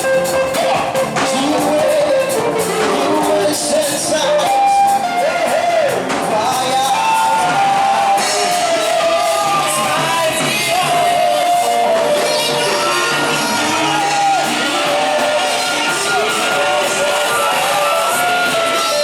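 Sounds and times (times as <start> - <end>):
gospel music with band: 0.0 - 19.0
voices singing held notes: 0.0 - 19.0
people shouting: 5.2 - 19.0.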